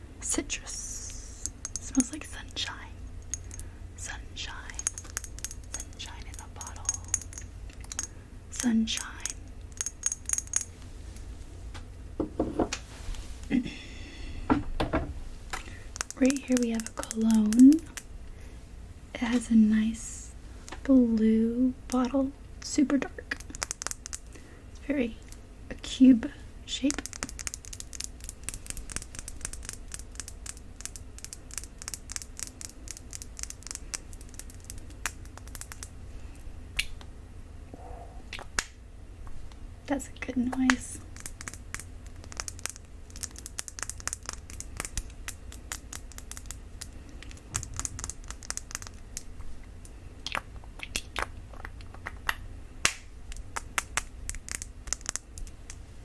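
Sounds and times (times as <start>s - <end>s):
knock: 12.2s - 12.7s.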